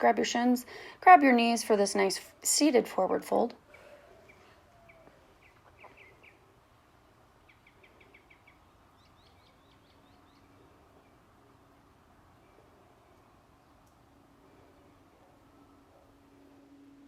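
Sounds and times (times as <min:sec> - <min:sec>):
faint bird chirps: 0:03.6 - 0:06.6, 0:07.4 - 0:11.6.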